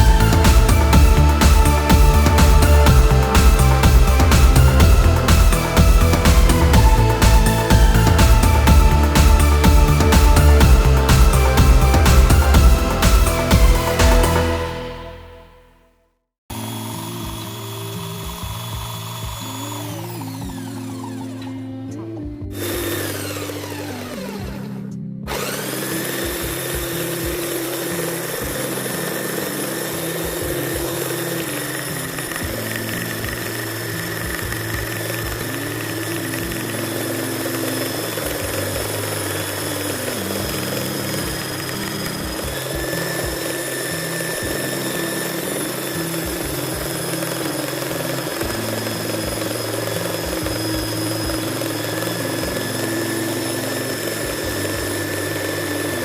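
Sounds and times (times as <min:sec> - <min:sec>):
belt sander motor whine: 0:00.0 - 0:14.8, 0:16.5 - 0:21.6, 0:22.6 - 0:56.0.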